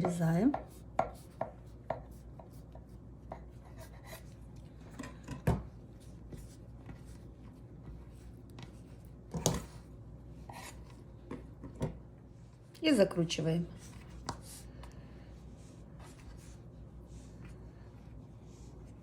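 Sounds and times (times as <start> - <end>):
knife cutting dough on a board: 0.0 - 9.8
faint handling sounds: 13.6 - 19.0.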